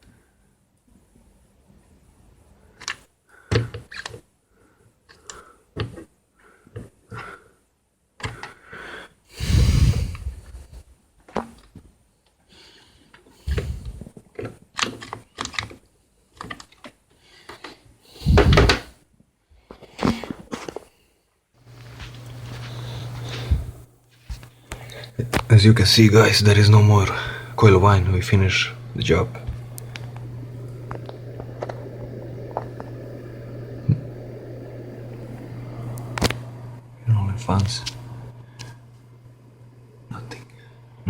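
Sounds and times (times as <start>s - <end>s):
clicks and knocks of handling: 14.3s - 15.8s, 16.4s - 17.8s
heavy thumps: 18.2s - 18.9s.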